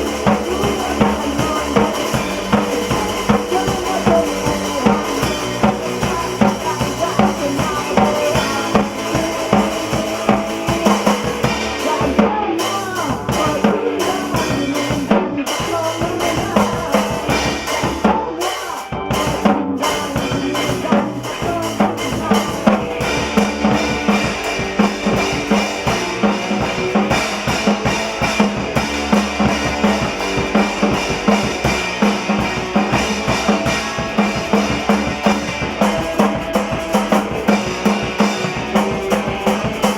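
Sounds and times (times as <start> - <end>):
bass drum and snare beat: 0.0 - 18.3, 19.0 - 39.9
band playing live: 0.0 - 39.9
cymbals: 22.0 - 39.9.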